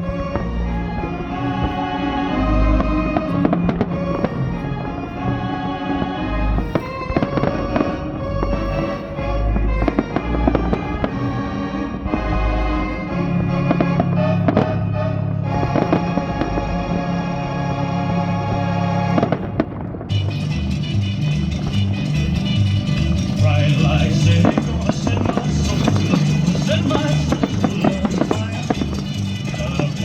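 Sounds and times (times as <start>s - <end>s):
music soundtrack: 0.0s - 30.0s
fireworks bangs and crackles: 23.2s - 30.0s.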